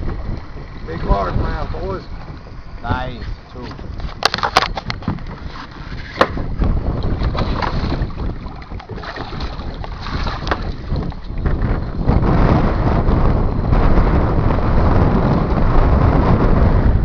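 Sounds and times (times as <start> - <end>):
wind buffeting microphone: 0.0 - 17.0
sharp knocks and clicks: 3.7 - 5.4.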